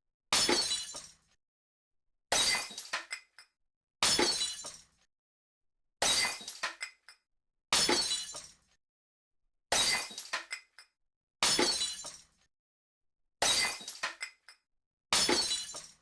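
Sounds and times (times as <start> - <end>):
glass smashing: 0.3 - 1.2, 2.3 - 3.2, 4.0 - 4.9, 6.0 - 6.9, 7.8 - 8.6, 9.7 - 10.6, 11.4 - 12.3, 13.4 - 14.4, 15.1 - 16.0
glass shards tinkling: 15.3 - 16.0.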